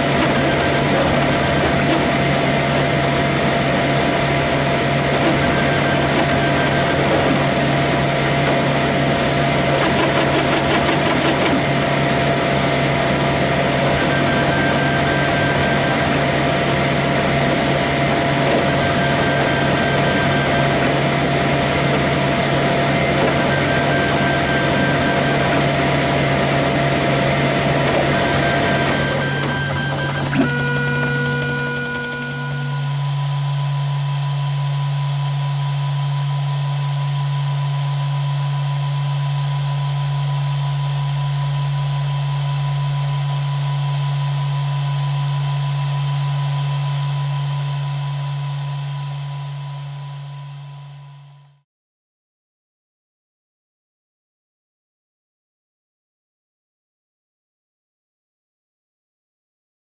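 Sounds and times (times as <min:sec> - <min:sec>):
fan hum: 0:00.0 - 0:36.3
printer motor whine: 0:00.0 - 0:51.0
short high tones: 0:28.0 - 0:34.7.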